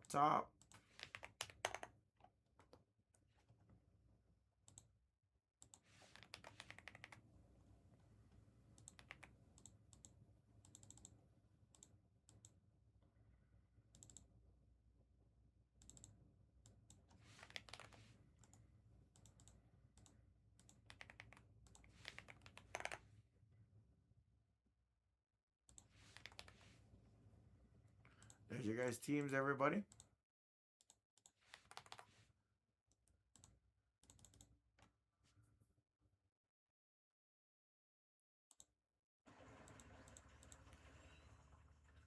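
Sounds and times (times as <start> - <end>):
keyboard typing and clicking: 0.0 - 2.0, 5.6 - 7.3, 8.7 - 12.6, 13.9 - 14.3, 15.8 - 18.6, 19.2 - 23.0, 25.7 - 26.7, 30.8 - 32.1, 33.4 - 34.5.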